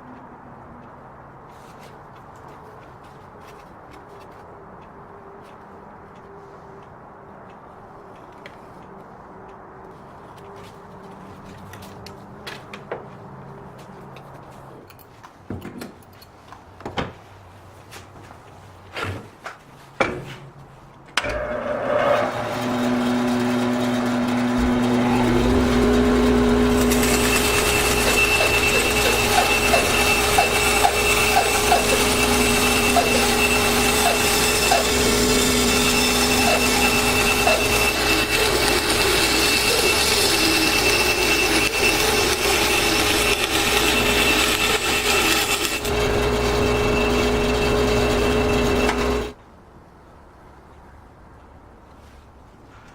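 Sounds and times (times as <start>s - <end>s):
power tool whining: 21.2s - 49.4s.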